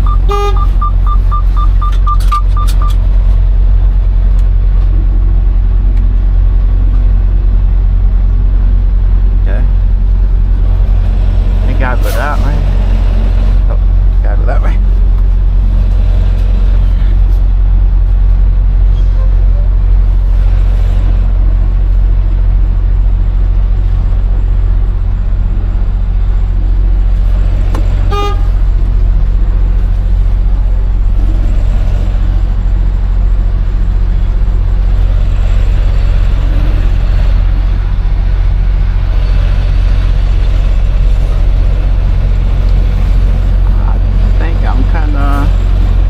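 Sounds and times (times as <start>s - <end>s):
truck horn toot: 0.0s - 2.0s, 28.0s - 28.8s
truck diesel engine running: 0.0s - 46.0s.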